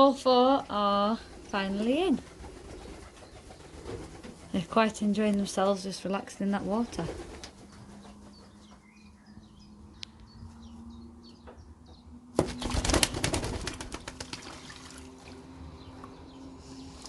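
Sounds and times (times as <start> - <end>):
pigeons splashing and wing-beating: 1.3 - 4.6, 12.4 - 15.5.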